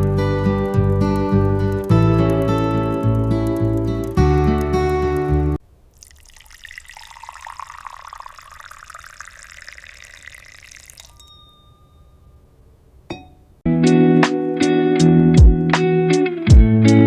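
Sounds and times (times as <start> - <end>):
liquid pouring into vessel: 5.7 - 11.3.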